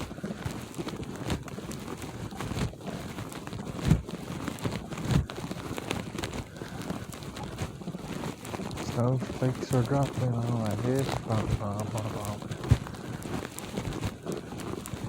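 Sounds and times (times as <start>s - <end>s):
footsteps crunching in snow: 0.0s - 15.0s.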